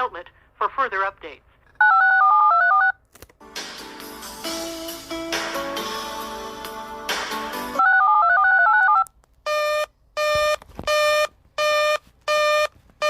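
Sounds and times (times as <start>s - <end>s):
background music: 3.4s - 7.9s.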